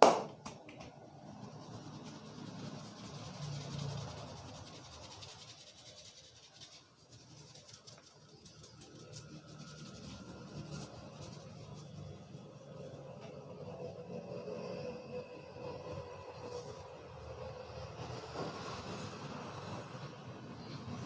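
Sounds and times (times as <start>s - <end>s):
hands scratching through hair: 1.4s - 12.1s.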